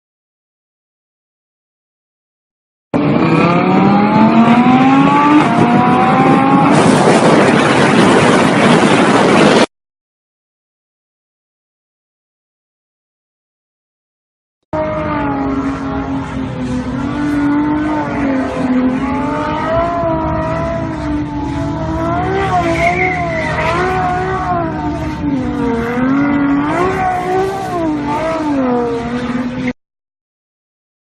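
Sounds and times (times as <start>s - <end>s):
car engine revving: 3.0s - 9.7s, 14.7s - 29.8s.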